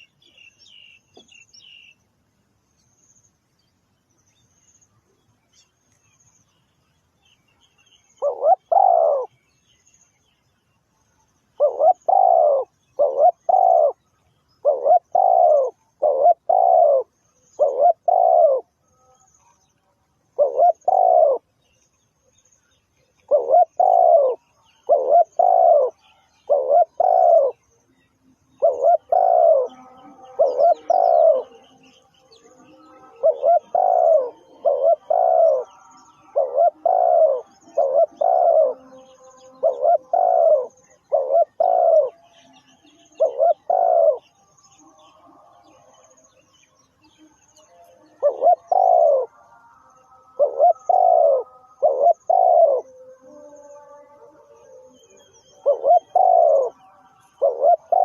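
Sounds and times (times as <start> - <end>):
small birds chirping: 0.0 - 2.1, 2.7 - 58.0
dove cooing: 8.1 - 9.4, 11.6 - 18.8, 20.3 - 21.5, 23.1 - 27.7, 28.5 - 46.2, 47.7 - 58.0.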